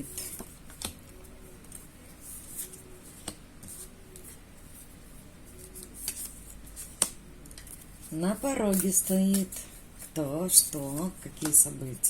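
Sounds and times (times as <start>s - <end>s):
cards tapping and sliding: 5.6s - 7.9s, 8.7s - 10.1s.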